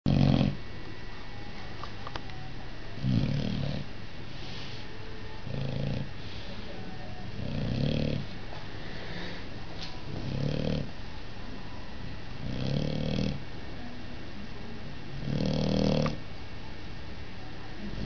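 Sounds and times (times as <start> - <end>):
dog snoring: 0.1 - 0.6, 3.0 - 3.9, 5.4 - 6.4, 7.3 - 8.4, 10.1 - 11.0, 12.4 - 13.4, 15.1 - 16.2
soft breathy sounds: 3.0 - 7.4, 8.2 - 9.7.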